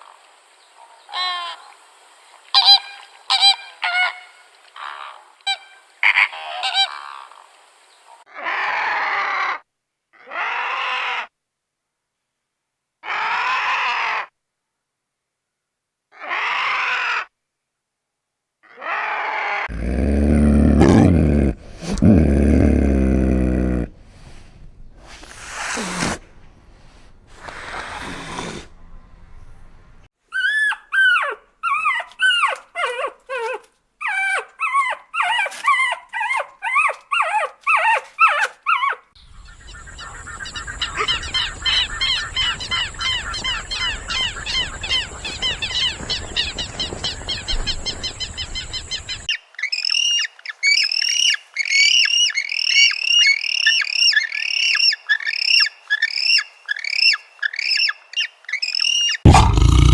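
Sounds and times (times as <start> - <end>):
background hiss: 0.0 - 8.2, 19.7 - 30.1
animal yelping calls: 18.8 - 23.9, 30.3 - 39.1, 59.3 - 59.9
fast animal calls: 19.0 - 24.4, 59.3 - 59.9.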